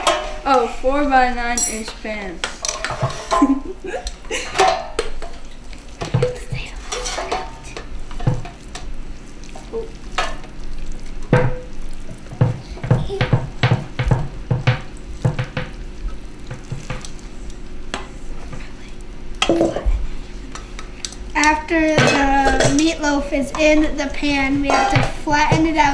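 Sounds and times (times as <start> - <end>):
spoon scraping and knocking bowl: 1.6 - 3.6, 24.6 - 25.8.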